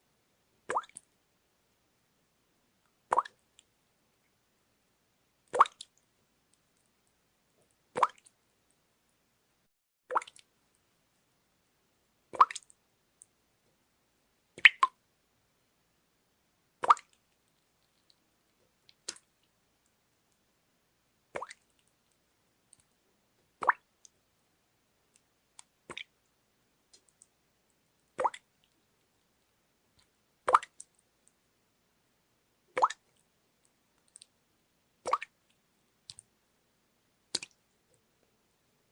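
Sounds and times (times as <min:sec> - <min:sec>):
water dripping into water: 0:00.6 - 0:01.2, 0:02.8 - 0:04.4, 0:05.4 - 0:08.8, 0:10.1 - 0:10.9, 0:12.3 - 0:13.4, 0:14.6 - 0:15.0, 0:16.8 - 0:20.5, 0:21.3 - 0:24.2, 0:25.0 - 0:31.4, 0:32.7 - 0:34.4, 0:35.0 - 0:36.4, 0:37.3 - 0:38.0.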